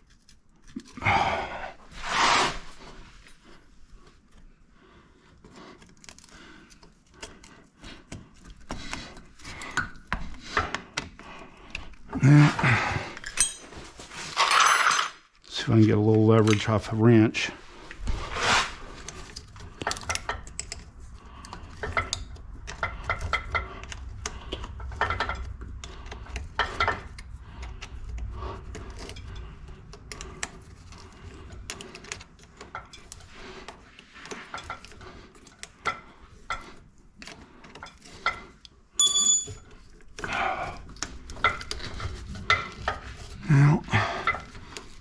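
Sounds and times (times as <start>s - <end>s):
wrench clinking on metal fittings: 13.2s - 13.8s, 39.0s - 39.7s
bright ringing clink: 39.0s - 39.6s.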